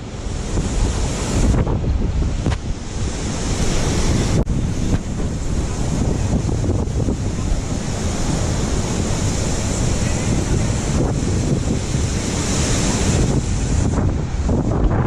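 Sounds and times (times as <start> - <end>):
strong wind buffeting microphone: 0.0 - 15.0.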